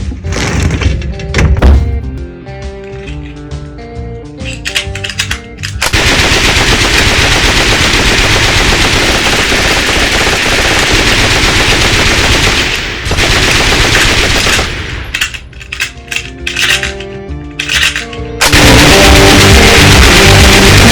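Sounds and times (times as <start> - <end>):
music: 0.0 - 6.0, 14.5 - 20.9
machine-gun and rifle fire: 5.8 - 15.5, 17.6 - 20.9.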